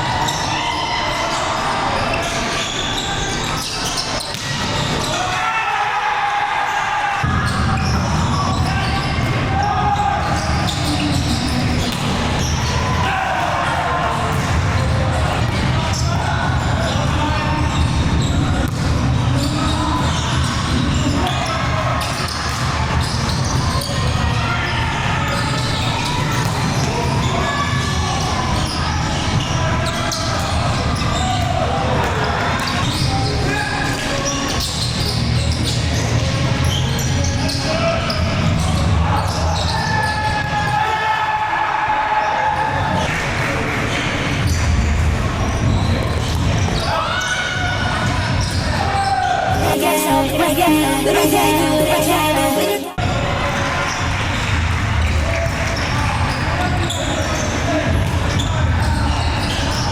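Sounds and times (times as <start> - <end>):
players' voices echoing: 49.5 - 54.0.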